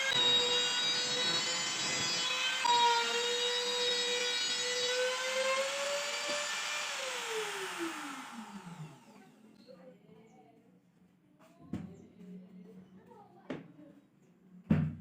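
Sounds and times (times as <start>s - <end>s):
power tool whining and spinning down: 0.0s - 9.5s.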